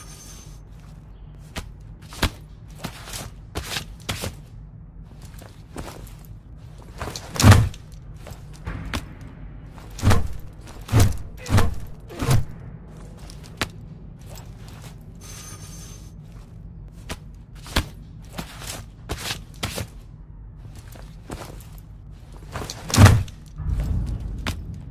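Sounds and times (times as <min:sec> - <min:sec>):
sledgehammer heavy thuds: 0:06.8 - 0:15.0, 0:21.0 - 0:24.9.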